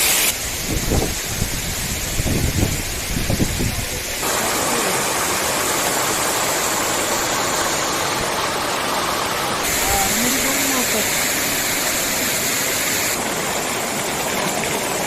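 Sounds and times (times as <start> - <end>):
waterfall rushing: 0.0 - 15.0
wind rumble on microphone: 0.4 - 4.2.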